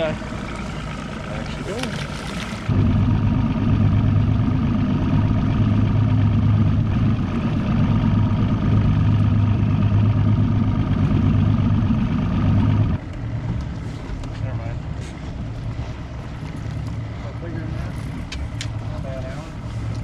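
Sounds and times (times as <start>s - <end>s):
outboard motor droning: 0.0s - 20.0s.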